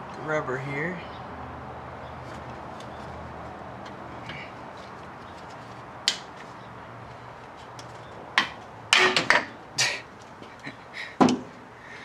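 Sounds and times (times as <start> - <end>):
hand tools knocking and clanking: 8.4 - 9.5.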